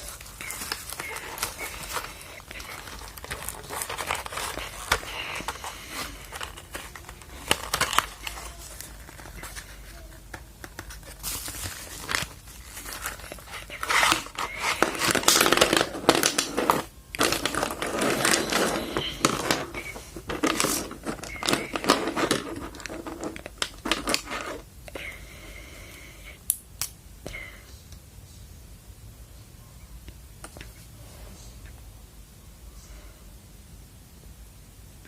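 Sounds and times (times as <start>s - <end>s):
packaging tearing: 0.0s - 9.8s, 10.6s - 24.6s
packaging crinkling and rustling: 0.0s - 24.6s.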